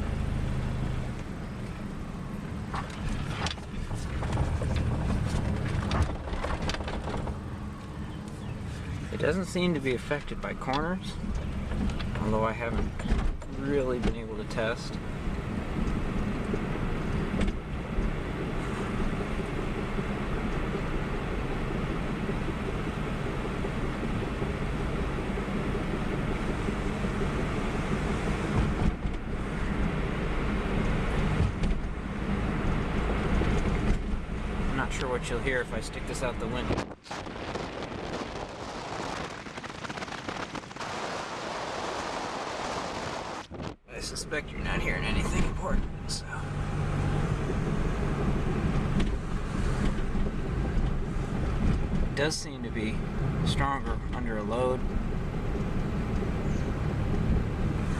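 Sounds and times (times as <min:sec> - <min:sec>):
car road noise from inside: 0:00.0 - 0:57.9
wind buffeting microphone: 0:15.0 - 0:52.2.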